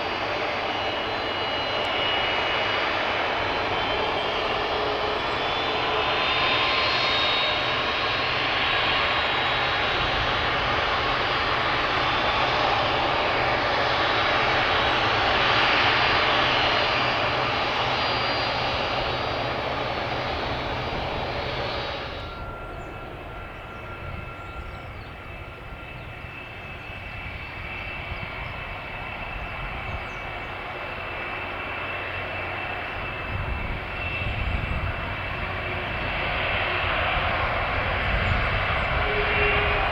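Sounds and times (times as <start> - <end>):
distant jet engines: 0.0 - 39.9
thin engine whine: 0.0 - 39.9.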